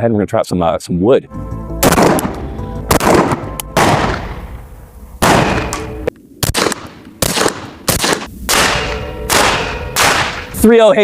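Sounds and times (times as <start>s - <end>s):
suppressed rifle shots: 1.8s - 4.5s, 5.2s - 10.6s.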